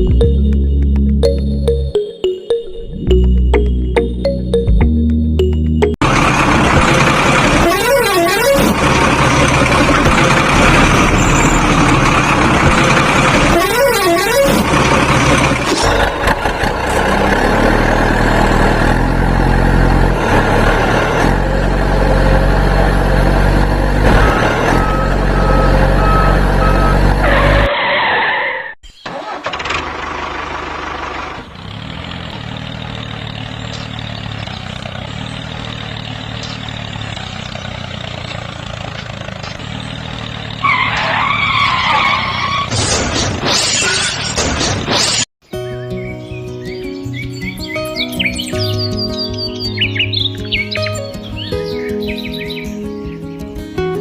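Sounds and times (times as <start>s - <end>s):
vehicle engine running: 3.0s - 27.7s, 29.2s - 41.4s
quieter steady engine: 29.1s - 40.6s.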